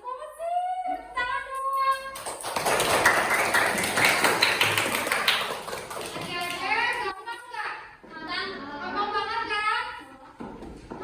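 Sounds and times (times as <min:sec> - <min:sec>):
group clapping: 0:01.8 - 0:07.2.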